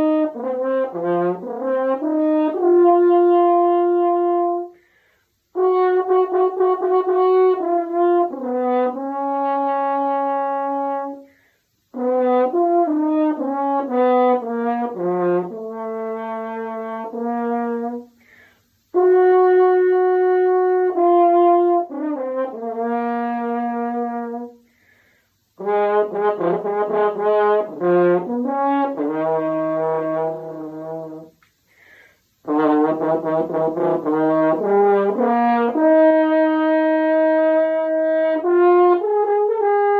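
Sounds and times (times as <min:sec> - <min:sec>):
french horn melody: 0:00.0 - 0:31.5, 0:32.4 - 0:39.9
quick breath: 0:04.7 - 0:05.5, 0:11.2 - 0:11.9, 0:18.1 - 0:18.9, 0:24.6 - 0:25.6, 0:31.5 - 0:32.4.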